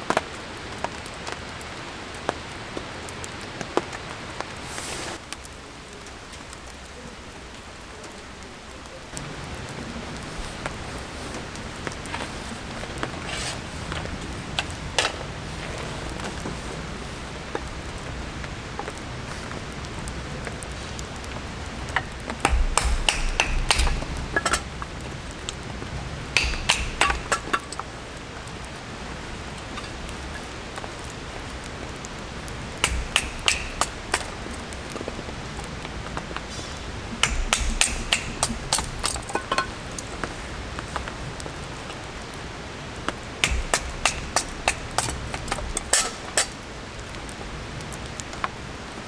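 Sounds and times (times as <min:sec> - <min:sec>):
rain falling: 0:00.0 - 0:49.0
hard objects clinking and knocking: 0:22.4 - 0:24.8, 0:26.4 - 0:28.0, 0:32.7 - 0:35.1, 0:37.2 - 0:40.3, 0:43.4 - 0:46.6.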